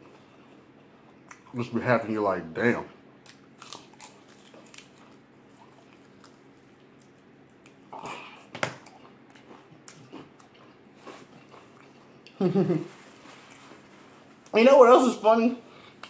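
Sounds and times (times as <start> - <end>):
person chewing: 3.2 - 12.4.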